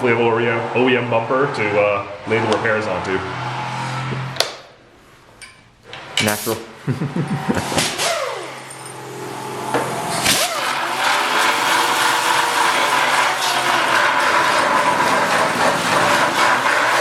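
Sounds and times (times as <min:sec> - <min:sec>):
power grinder grinding: 0:07.9 - 0:17.0.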